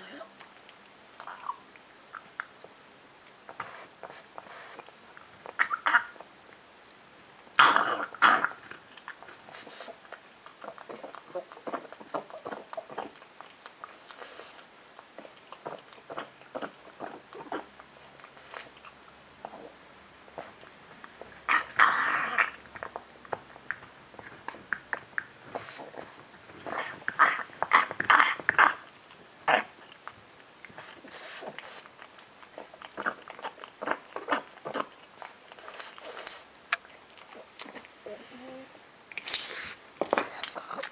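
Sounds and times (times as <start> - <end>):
dog chewing and smacking: 7.4 - 38.1.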